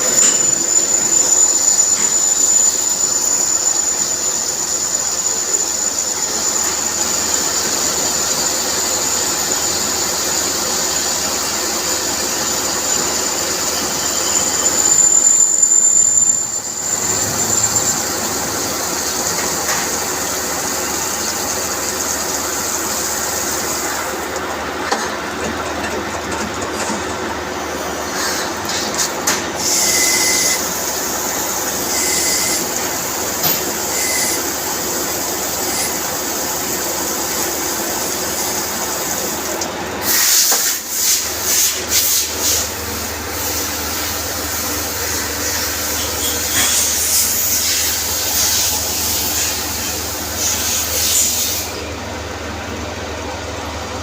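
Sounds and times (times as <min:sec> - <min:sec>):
cnc machine humming: 0:10.3 - 0:22.7.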